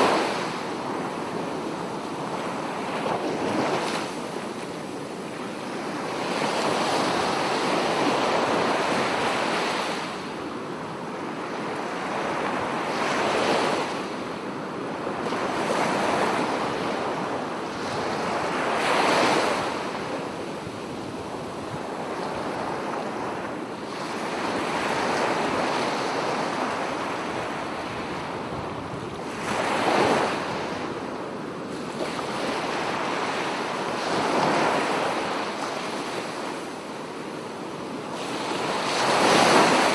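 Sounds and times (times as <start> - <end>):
ocean waves breaking: 38.0 - 39.9.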